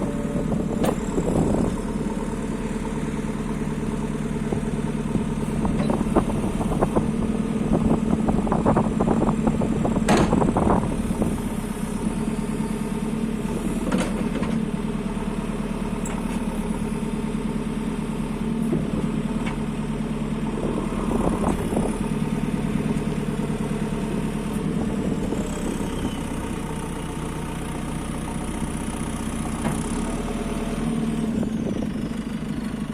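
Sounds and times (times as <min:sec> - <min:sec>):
diesel engine running: 0:00.0 - 0:32.9
machine clanks and knocks: 0:10.0 - 0:10.4.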